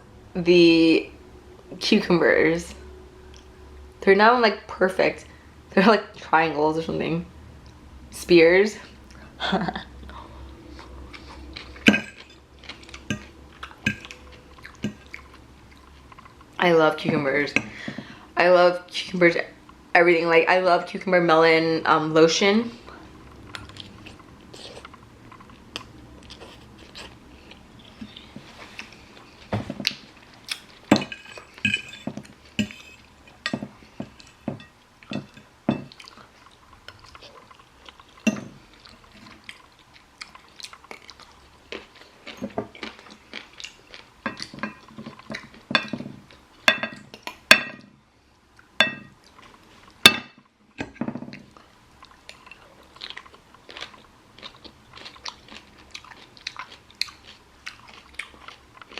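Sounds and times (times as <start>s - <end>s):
chewing: 10.0s - 16.6s, 22.9s - 34.4s, 35.3s - 46.4s, 48.5s - 49.9s, 51.3s - 58.9s
utensils clinking against a dish: 11.2s - 15.1s, 30.9s - 36.0s.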